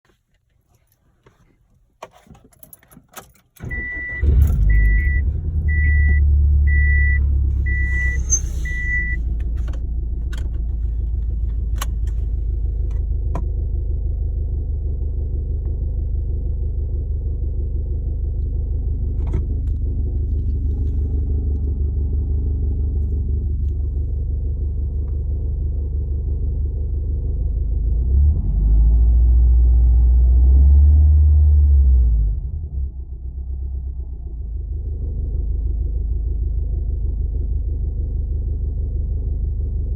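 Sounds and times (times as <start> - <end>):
car engine starting and idling: 2.3 - 39.9
warning chime beeping: 3.7 - 9.2.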